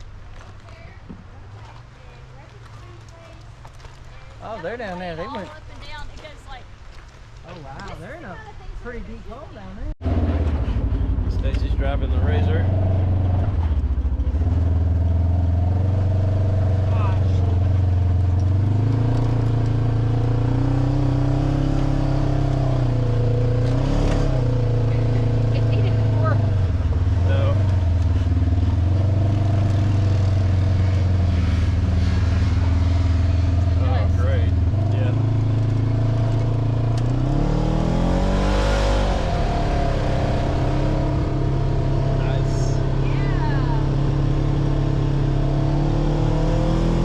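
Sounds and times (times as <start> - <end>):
vehicle engine running: 10.0 - 47.0.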